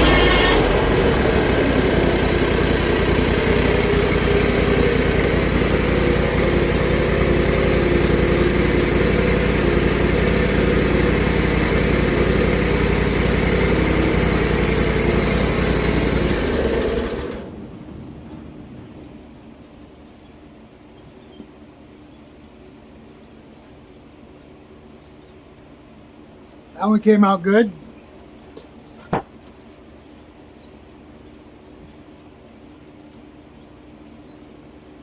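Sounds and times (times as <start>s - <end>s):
bandsaw mill engine sawing: 0.0s - 17.8s.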